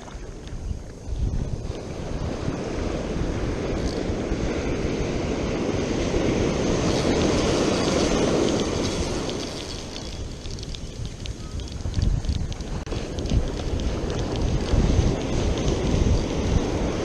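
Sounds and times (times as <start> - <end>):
wind rumbling on microphone: 0.0 - 17.0
wave breaking on beach: 1.6 - 11.3, 12.7 - 17.0.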